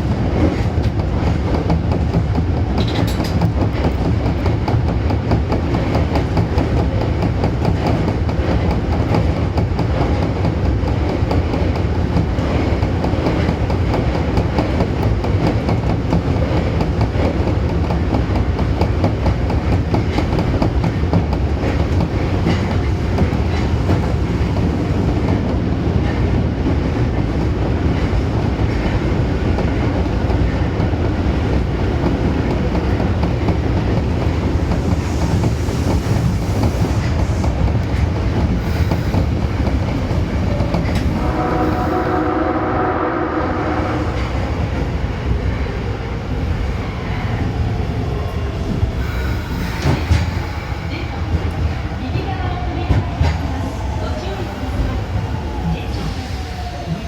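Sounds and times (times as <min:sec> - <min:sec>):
subway train rumbling: 0:00.0 - 0:57.0
train horn: 0:41.0 - 0:44.6.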